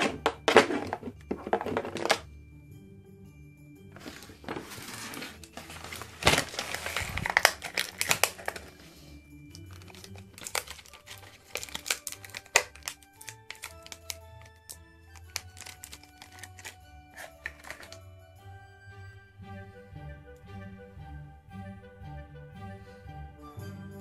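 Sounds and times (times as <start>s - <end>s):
plastic parts clicking and tapping: 0.0s - 2.2s, 4.4s - 8.7s, 9.6s - 18.0s
background music: 0.0s - 24.0s
packaging crinkling and tearing: 4.5s - 8.8s, 9.7s - 18.0s.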